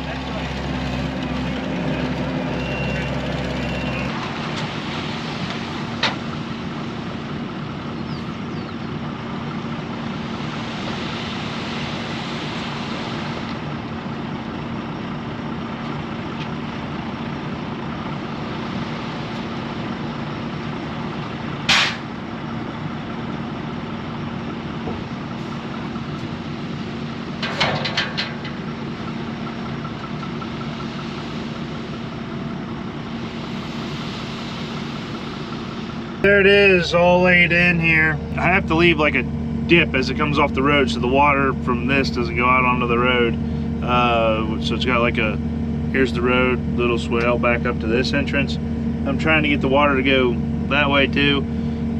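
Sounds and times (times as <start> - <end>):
heavy equipment engine running: 0.0 - 51.9
metal clanks: 21.7 - 22.1, 27.3 - 30.9.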